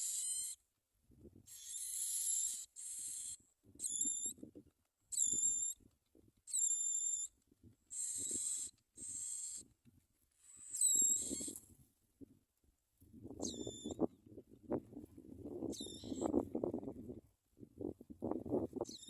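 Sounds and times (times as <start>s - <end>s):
nestlings begging calls: 0.0s - 0.6s, 1.5s - 4.3s, 7.9s - 9.6s, 10.6s - 11.6s, 13.4s - 14.0s, 15.7s - 16.4s.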